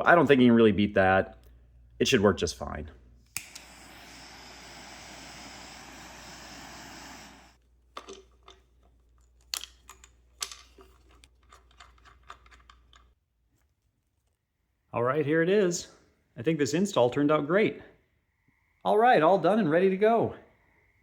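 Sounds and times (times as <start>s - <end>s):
steady hiss: 3.4s - 7.6s
small tools clicking and tapping: 8.0s - 13.2s.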